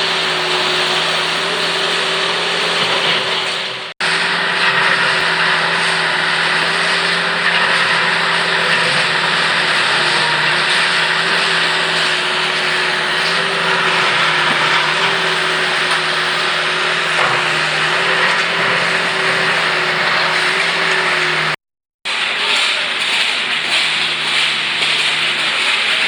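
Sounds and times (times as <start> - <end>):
construction machinery din: 0.0 - 26.0.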